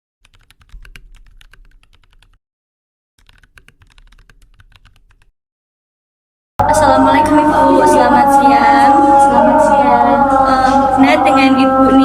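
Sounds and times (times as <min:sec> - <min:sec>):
computer keyboard typing: 0:00.2 - 0:02.4, 0:03.2 - 0:05.3.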